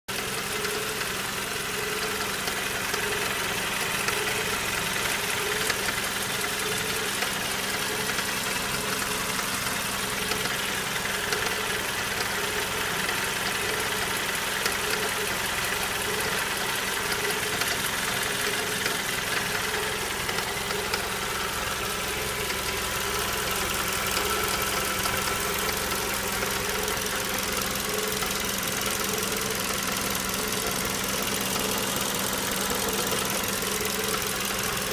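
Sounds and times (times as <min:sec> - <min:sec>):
car engine idling: 0:00.1 - 0:34.9.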